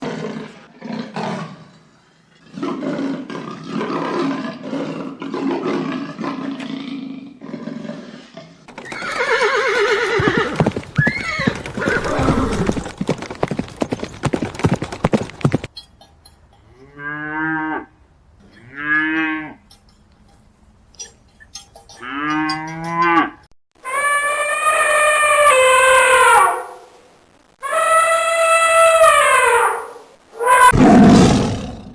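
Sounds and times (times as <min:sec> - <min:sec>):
farm animal calls: 0:15.6 - 0:26.7
pitched animal calls: 0:15.7 - 0:26.8, 0:27.6 - 0:30.9.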